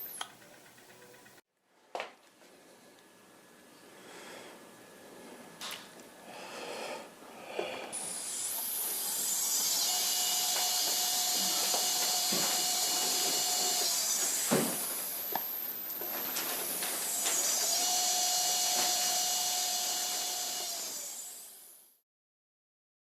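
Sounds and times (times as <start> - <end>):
motor whining: 7.6 - 22.0.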